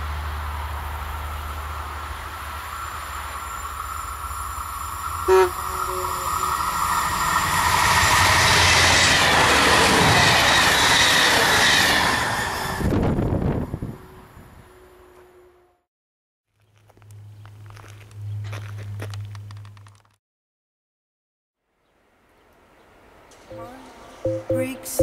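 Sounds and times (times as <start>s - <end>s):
train passing: 0.0s - 15.7s
wheels whining on rails: 0.0s - 15.8s
train horn blast: 5.2s - 7.0s.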